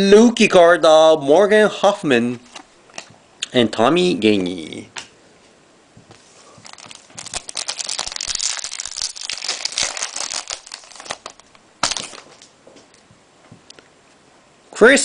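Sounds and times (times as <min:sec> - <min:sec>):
card pack wrapper crinkling: 0:06.6 - 0:12.6.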